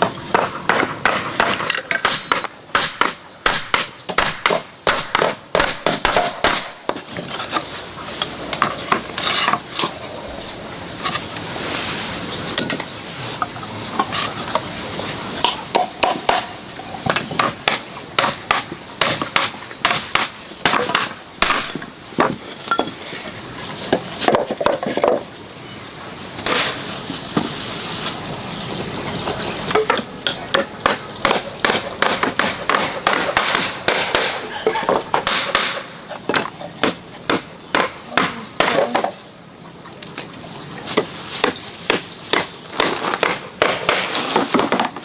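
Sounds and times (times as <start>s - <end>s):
hand tools tapping on wood: 0.0s - 10.0s, 15.4s - 23.0s, 29.7s - 39.1s
scraping wood: 5.2s - 12.2s, 40.9s - 45.0s.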